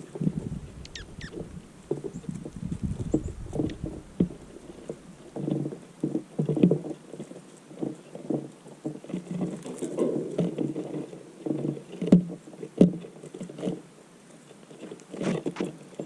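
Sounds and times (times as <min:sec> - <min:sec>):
soft knocks and rustling patter: 0:00.0 - 0:16.0
downward-sliding bird chirps: 0:00.2 - 0:05.0.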